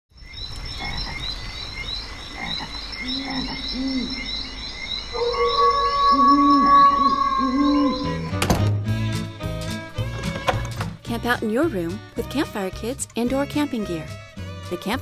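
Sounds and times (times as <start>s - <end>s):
frogs croaking: 0.1s - 8.2s.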